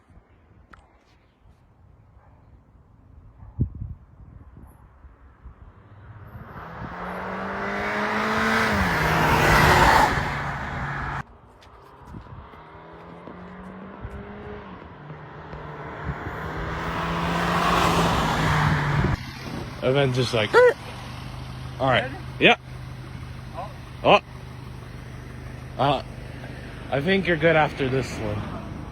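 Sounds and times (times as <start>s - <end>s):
car accelerating hard: 5.7s - 11.2s, 12.4s - 28.9s.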